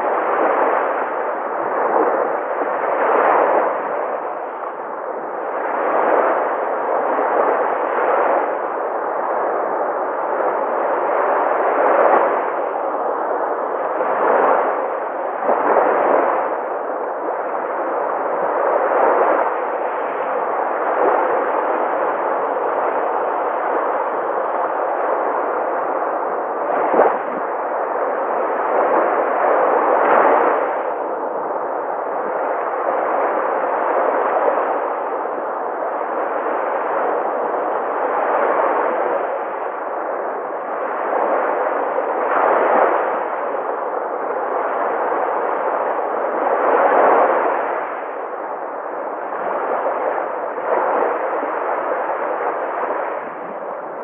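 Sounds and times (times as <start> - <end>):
sea waves breaking: 10.6 - 31.6, 32.2 - 54.0.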